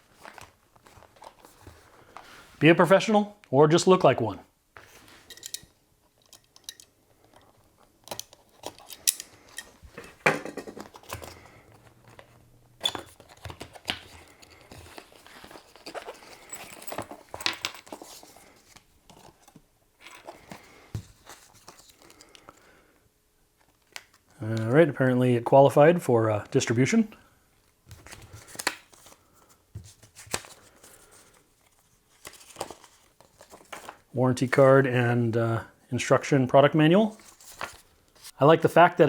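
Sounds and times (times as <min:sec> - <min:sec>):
packaging rustling and crinkling: 0:00.0 - 0:02.6, 0:07.2 - 0:22.7, 0:27.9 - 0:34.1.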